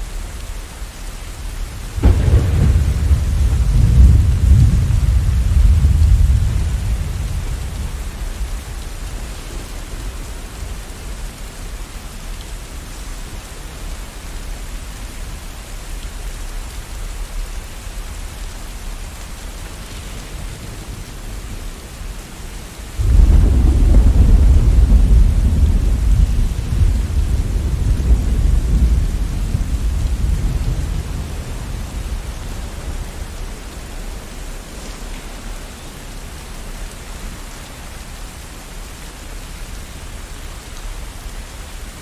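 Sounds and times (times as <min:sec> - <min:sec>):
steady rain falling: 0:00.0 - 0:42.0
rolling thunder: 0:02.0 - 0:10.6, 0:23.0 - 0:33.6.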